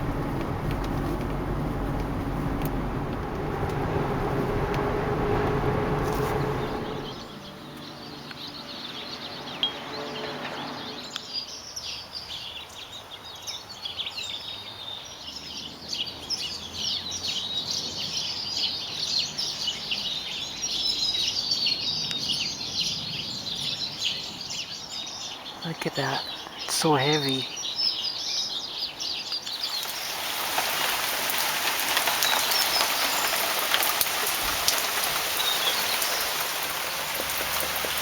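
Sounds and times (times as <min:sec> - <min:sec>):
vehicle passing: 0:00.0 - 0:11.2, 0:30.0 - 0:38.0
small birds chirping and twittering: 0:00.0 - 0:38.0.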